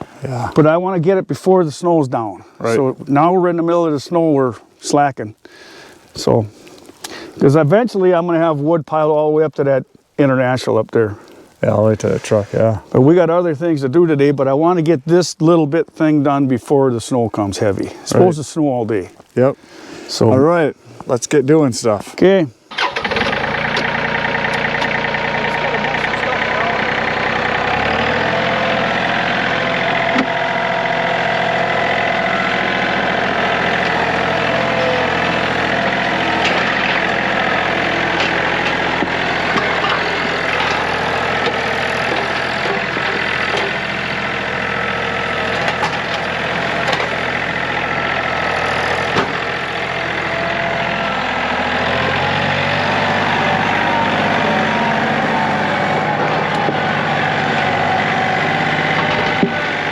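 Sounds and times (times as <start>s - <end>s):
vehicle engine idling: 22.7s - 59.9s.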